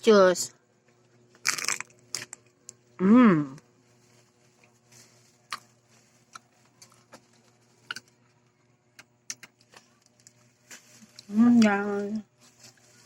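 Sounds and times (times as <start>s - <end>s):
crunching chips: 1.3s - 2.8s, 4.0s - 8.2s, 8.9s - 13.0s.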